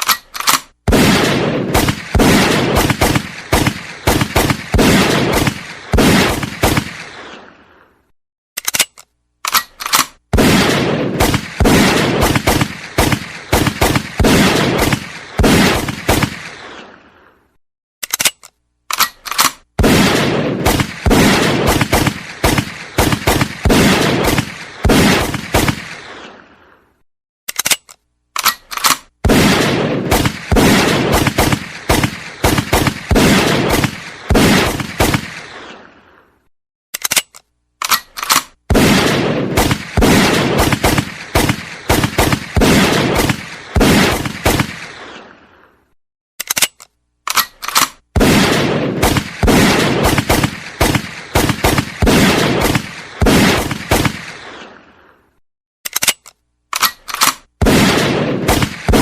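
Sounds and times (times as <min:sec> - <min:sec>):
gun cocking clicks: 0:00.0 - 0:00.8, 0:08.6 - 0:10.2, 0:18.0 - 0:19.7, 0:27.5 - 0:29.1, 0:37.0 - 0:38.6, 0:46.4 - 0:48.0, 0:55.9 - 0:57.5
gunfire bursts with echo: 0:00.9 - 0:07.5, 0:10.3 - 0:17.0, 0:19.8 - 0:26.5, 0:29.2 - 0:36.0, 0:38.7 - 0:45.4, 0:48.2 - 0:55.0, 0:57.6 - 0:59.0.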